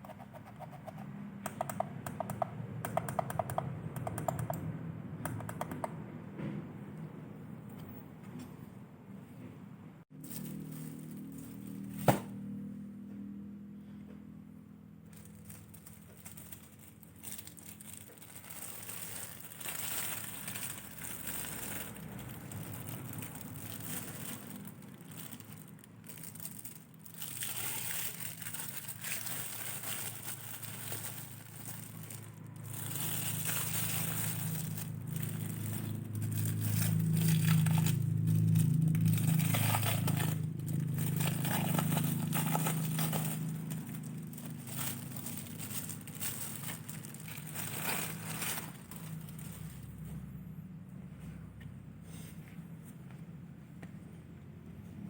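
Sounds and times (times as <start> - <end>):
plastic packaging crinkling: 10.2 - 12.4, 15.1 - 50.0.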